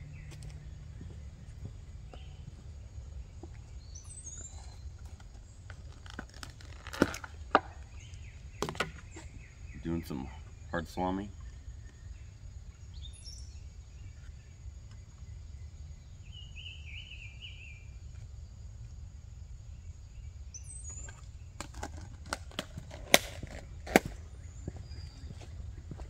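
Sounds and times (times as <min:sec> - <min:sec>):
steady low rumble: 0:00.0 - 0:06.0
bird chirping: 0:00.0 - 0:18.2, 0:19.7 - 0:21.9, 0:22.9 - 0:26.0.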